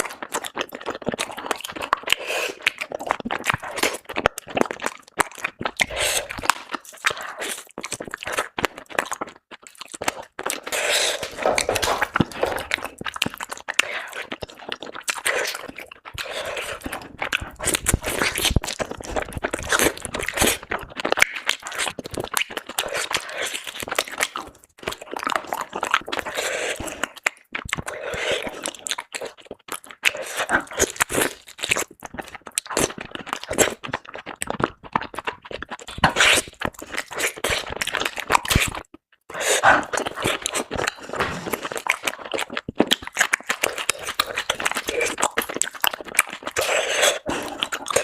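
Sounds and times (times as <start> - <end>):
crunching and chewing crisp food: 0.0 - 48.0.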